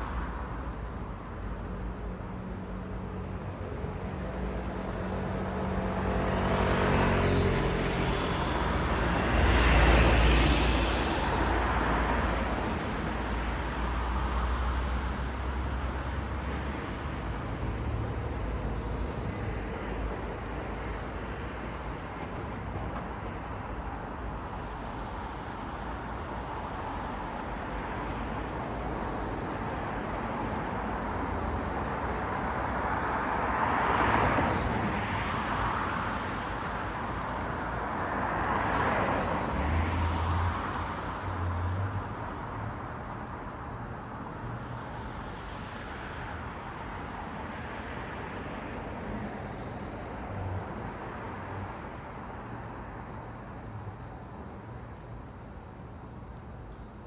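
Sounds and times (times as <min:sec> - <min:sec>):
cars passing: 0:04.5 - 0:24.3, 0:28.8 - 0:57.0
traffic hum: 0:28.7 - 0:57.0.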